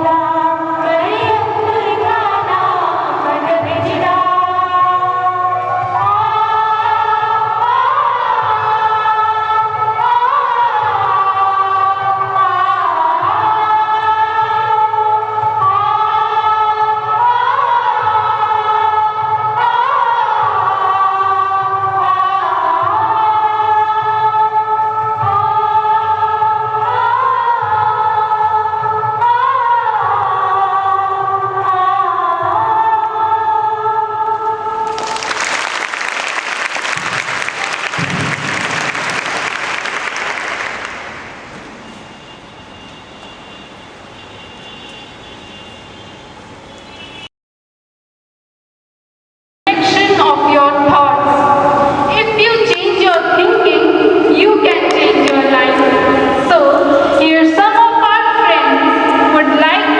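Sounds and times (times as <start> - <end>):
choir singing: 0.0 - 21.6, 53.9 - 59.9
applause: 34.8 - 41.8.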